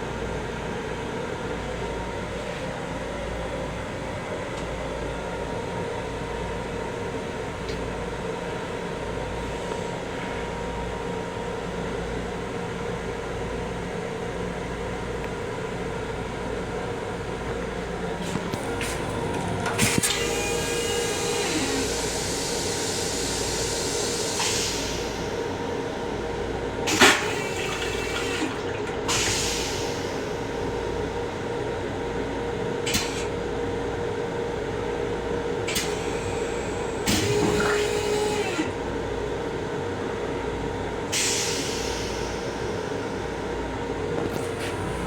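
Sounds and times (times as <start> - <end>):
water rushing in plumbing: 26.9 - 30.5.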